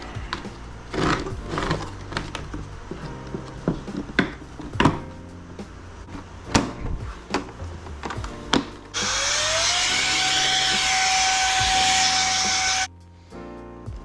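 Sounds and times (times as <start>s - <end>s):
loud rushing noise: 0.0s - 12.9s
small electric motor whine: 9.0s - 12.9s.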